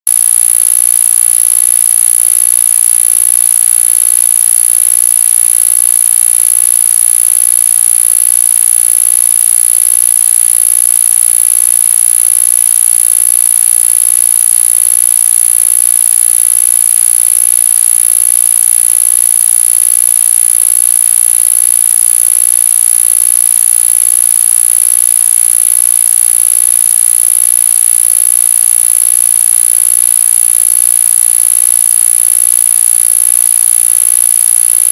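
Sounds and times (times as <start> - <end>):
steady high-pitched tone: 0.1 - 17.3.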